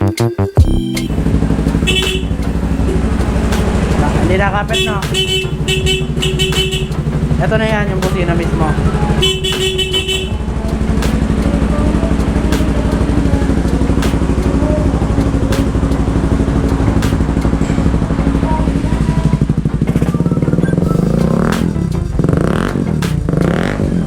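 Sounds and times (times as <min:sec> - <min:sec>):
motorcycle horn honking: 0:01.1 - 0:15.4
motorcycle engine idling: 0:01.1 - 0:24.0.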